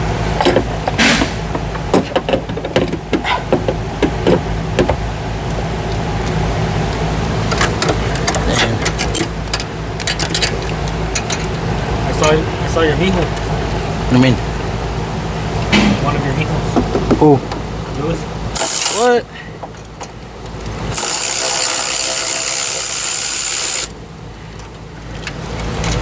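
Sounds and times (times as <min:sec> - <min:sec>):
steady low hum: 0:00.0 - 0:26.0
tools and metal parts clanking: 0:00.4 - 0:05.0, 0:07.4 - 0:11.6, 0:24.5 - 0:26.0.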